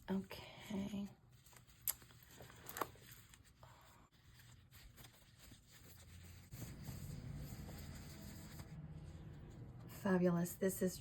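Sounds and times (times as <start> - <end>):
paper rustling and crackling: 1.3 - 9.9.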